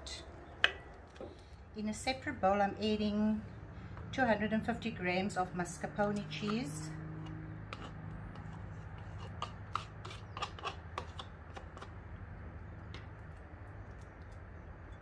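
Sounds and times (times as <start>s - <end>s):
utensil scraping a container: 6.0s - 12.0s.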